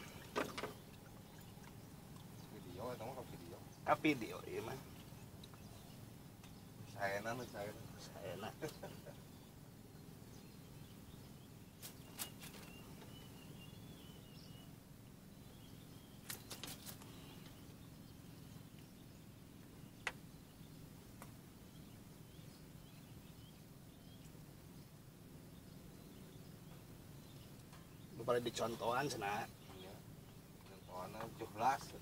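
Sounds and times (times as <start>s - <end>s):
low steady hum: 0.0s - 32.0s.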